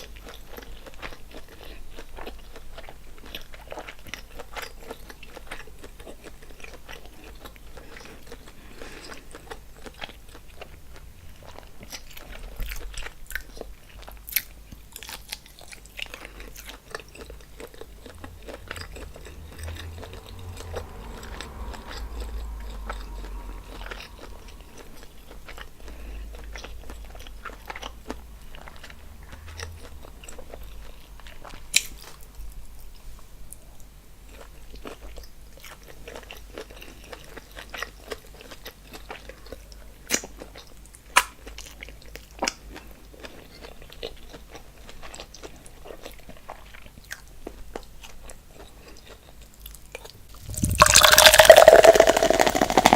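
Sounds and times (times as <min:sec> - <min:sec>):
close chewing and biting: 0:00.0 - 0:32.6, 0:34.2 - 0:52.9
wet mouth clicks: 0:50.4 - 0:52.9.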